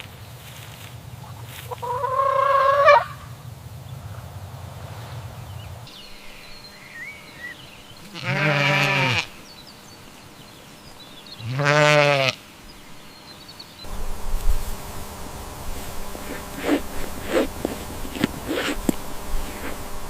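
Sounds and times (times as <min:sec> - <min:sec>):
faint bird chirps: 0:05.6 - 0:08.2
farm animal bleating: 0:07.9 - 0:09.4, 0:11.4 - 0:12.4.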